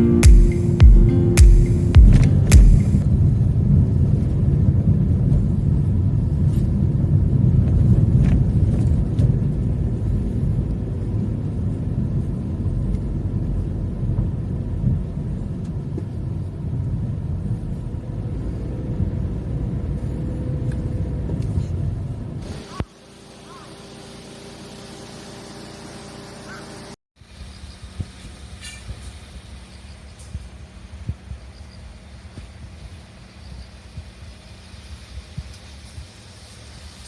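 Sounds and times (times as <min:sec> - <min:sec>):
steady low rumble: 0:00.0 - 0:20.2.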